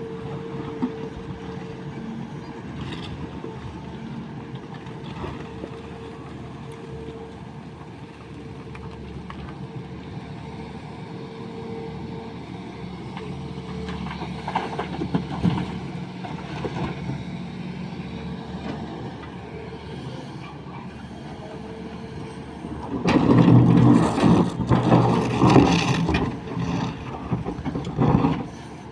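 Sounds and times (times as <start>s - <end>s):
excavator diesel engine running: 0.0s - 28.9s
clatter: 23.1s - 28.5s.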